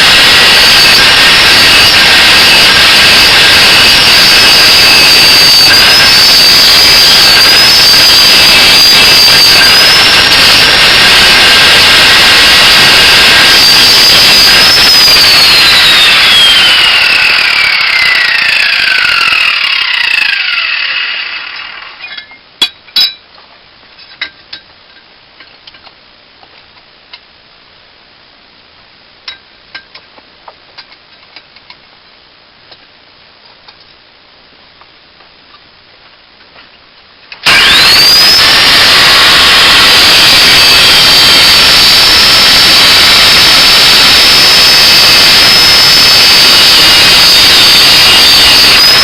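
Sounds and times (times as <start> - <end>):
angle grinder whine: 0.0 - 22.1, 37.4 - 49.0.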